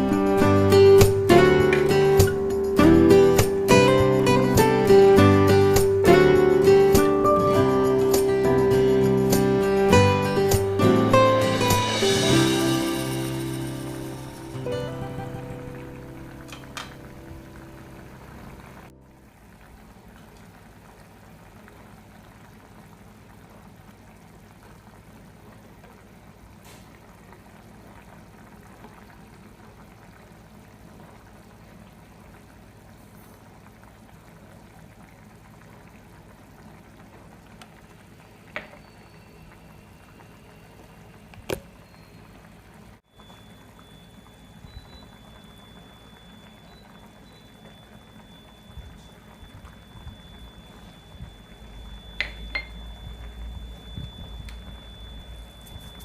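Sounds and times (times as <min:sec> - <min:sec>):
liquid bubbling in a pot: 0:15.8 - 0:56.0.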